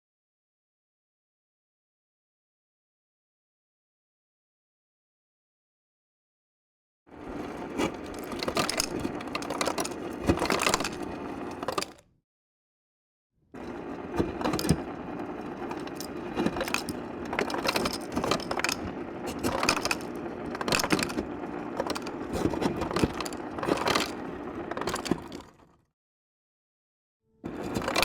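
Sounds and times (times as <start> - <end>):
ice dispenser motor hum: 7.1 - 12.0, 13.6 - 25.8, 27.4 - 28.0
ice cubes clattering into cup: 7.8 - 12.0, 15.6 - 25.5.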